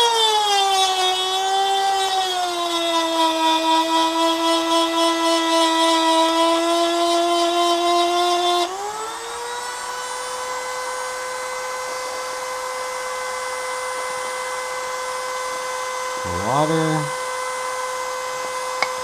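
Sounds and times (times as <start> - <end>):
rotary tool grinding steel: 0.0 - 8.8.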